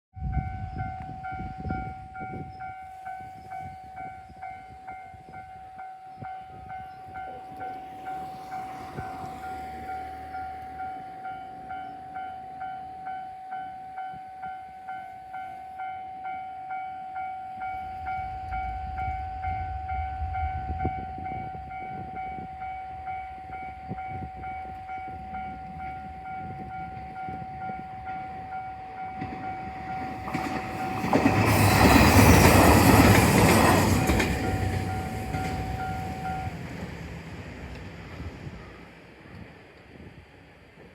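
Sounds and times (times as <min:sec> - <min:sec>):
level crossing warning bell: 0:00.2 - 0:36.8
low rumble: 0:17.6 - 0:24.9.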